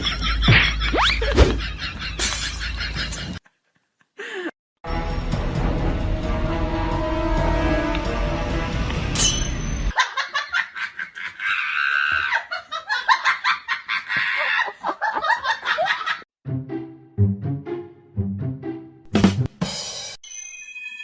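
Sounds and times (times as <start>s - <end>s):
music: 4.8s - 9.2s, 16.4s - 21.0s
rapid high-pitched laughter: 10.0s - 16.2s.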